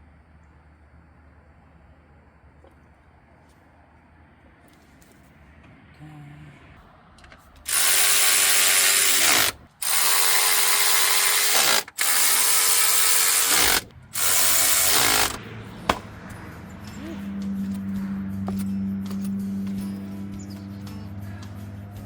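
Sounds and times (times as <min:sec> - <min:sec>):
steady low hum: 0:00.0 - 0:22.0
impact wrench bursts: 0:07.7 - 0:16.0.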